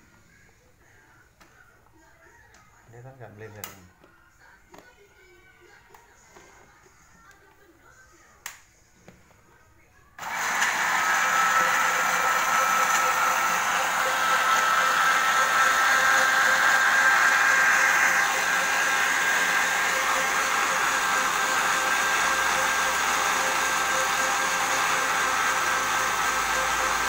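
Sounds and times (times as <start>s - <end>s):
electric blender running: 10.2s - 27.0s.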